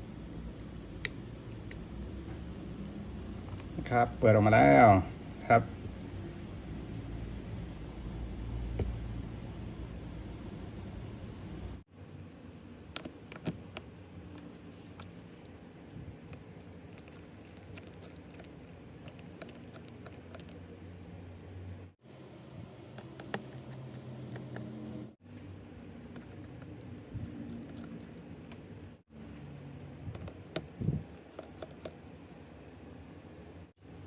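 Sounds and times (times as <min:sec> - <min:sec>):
faint steady hum: 0:00.0 - 0:34.0.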